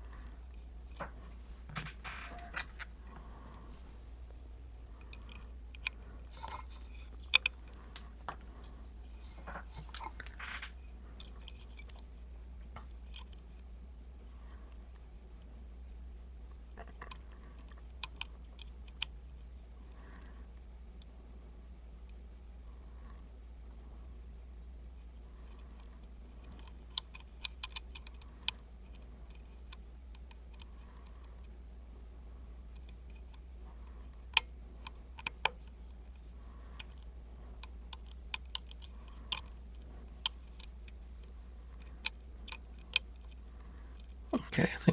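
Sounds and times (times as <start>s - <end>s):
low steady hum: 0.0s - 44.9s
lock pick clicking and scratching: 2.0s - 3.0s, 25.5s - 31.5s, 32.7s - 44.2s.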